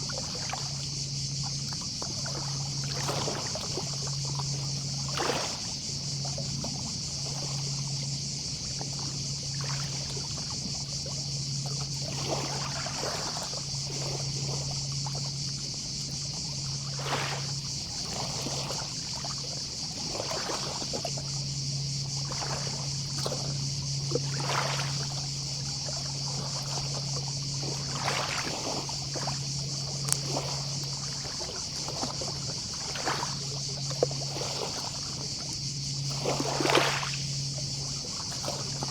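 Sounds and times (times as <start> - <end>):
distant cicadas: 0.0 - 38.9
small waves lapping on shore: 0.0 - 38.9.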